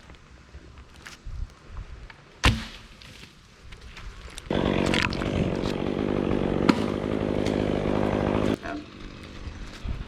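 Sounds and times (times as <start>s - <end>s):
chainsaw engine running: 4.5s - 9.4s.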